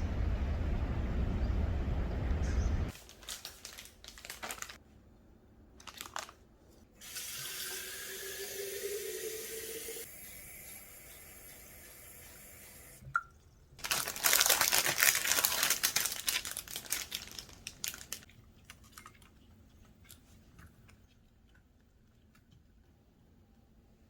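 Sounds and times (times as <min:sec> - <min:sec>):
crinkling and rustling: 0:02.9 - 0:05.0, 0:05.8 - 0:06.8, 0:13.8 - 0:23.1.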